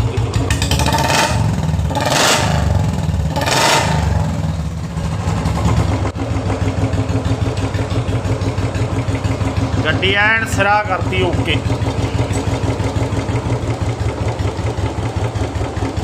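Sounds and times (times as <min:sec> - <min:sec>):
motorcycle engine idling: 0:00.0 - 0:16.0
motorcycle engine throttle blips: 0:00.0 - 0:16.0.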